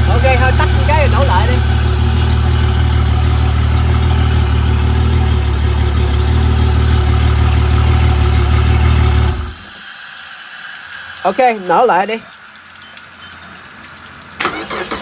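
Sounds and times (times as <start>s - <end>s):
outboard engine idling: 0.0s - 9.7s, 14.4s - 15.0s.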